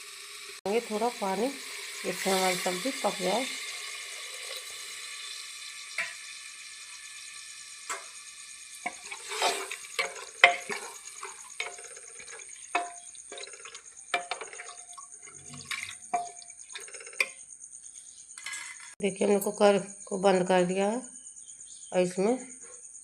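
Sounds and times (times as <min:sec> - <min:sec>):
water pouring into a pot: 0:00.0 - 0:17.3
metal spoon stirring and clinking: 0:08.8 - 0:17.4.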